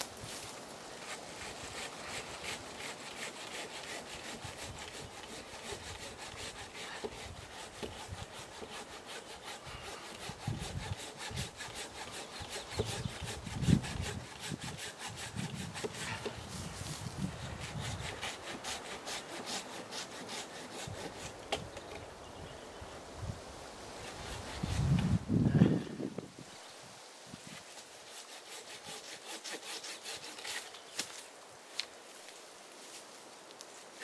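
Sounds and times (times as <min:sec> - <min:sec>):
saw rasping through wood: 0:01.0 - 0:16.4, 0:17.4 - 0:21.4, 0:24.0 - 0:25.0, 0:28.1 - 0:30.7.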